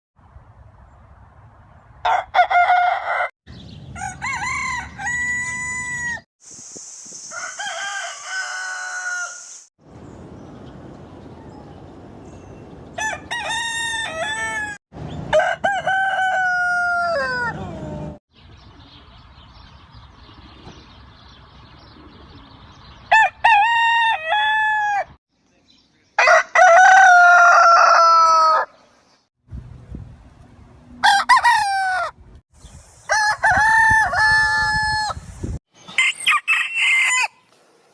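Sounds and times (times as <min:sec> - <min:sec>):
roosters crowing: 0:02.0 - 0:06.3, 0:07.3 - 0:09.7, 0:12.9 - 0:18.2, 0:23.1 - 0:25.2, 0:26.2 - 0:28.8, 0:30.9 - 0:32.2, 0:33.0 - 0:35.2, 0:35.9 - 0:37.5.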